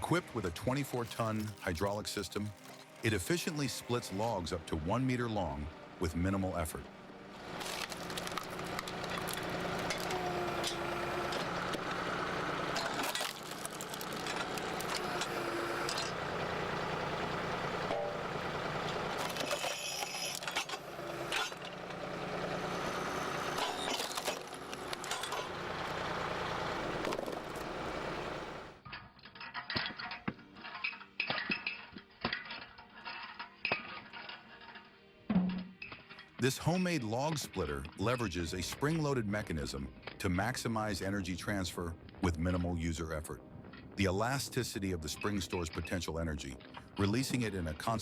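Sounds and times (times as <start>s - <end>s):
machine hum: 7.3s - 28.8s
clatter of wood and metal: 12.7s - 15.3s, 28.8s - 36.4s.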